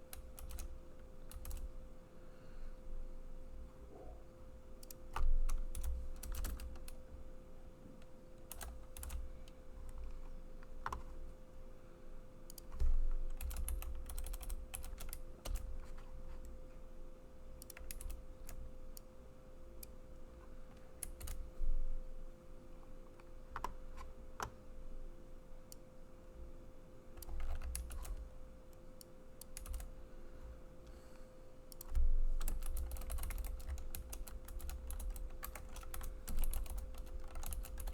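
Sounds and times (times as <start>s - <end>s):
faint steady hum: 0.0s - 37.9s
computer keyboard typing: 0.1s - 1.7s, 4.8s - 7.0s, 8.4s - 10.2s, 10.8s - 11.1s, 12.5s - 16.0s, 17.6s - 18.7s, 21.0s - 21.4s, 23.5s - 24.6s, 27.2s - 28.3s, 29.4s - 29.9s, 31.7s - 37.9s.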